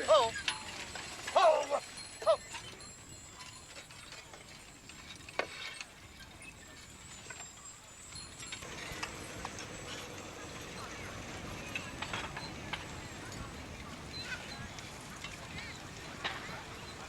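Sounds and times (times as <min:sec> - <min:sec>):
light clinks and knocks: 0:00.3 - 0:17.0.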